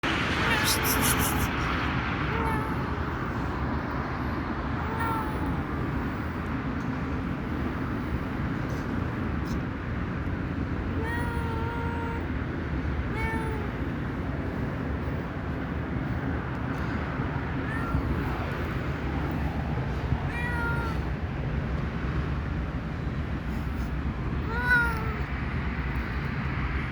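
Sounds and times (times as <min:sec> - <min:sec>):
low background rumble: 0:00.0 - 0:26.9
cat meowing: 0:00.4 - 0:01.6, 0:02.3 - 0:03.0, 0:04.8 - 0:05.8, 0:10.9 - 0:12.3, 0:13.1 - 0:13.9, 0:17.6 - 0:18.6, 0:20.2 - 0:21.1, 0:24.4 - 0:25.4.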